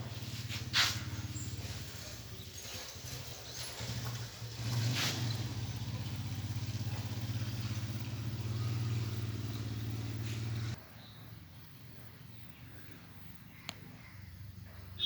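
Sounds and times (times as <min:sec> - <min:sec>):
small engine running: 0:00.0 - 0:10.8
short hiss: 0:00.6 - 0:01.1.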